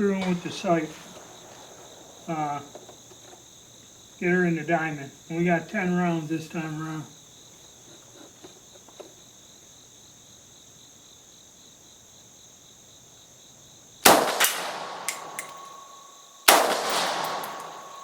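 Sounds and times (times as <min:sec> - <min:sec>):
rifle shots echoing: 0:00.0 - 0:03.3, 0:14.0 - 0:18.0
insects chirring: 0:00.0 - 0:18.0.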